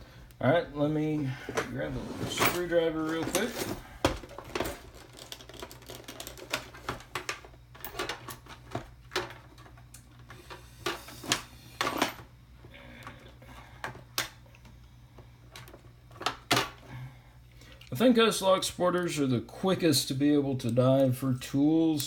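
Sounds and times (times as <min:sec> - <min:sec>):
metal tools clattering: 0:01.6 - 0:07.0.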